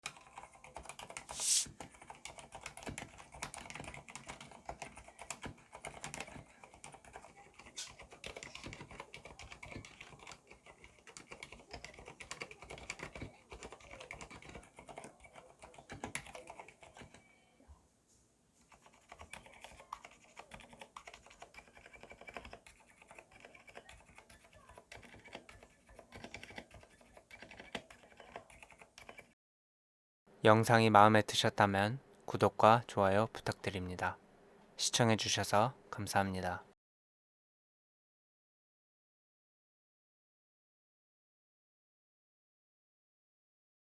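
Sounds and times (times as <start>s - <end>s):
typing on mechanical keyboard: 0.0s - 17.3s, 18.7s - 29.4s.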